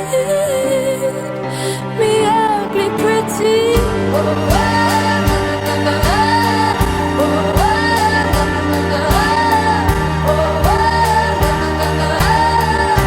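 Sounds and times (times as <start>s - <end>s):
person singing wordless melody: 0.0s - 13.0s
steady drum beat: 3.8s - 13.0s.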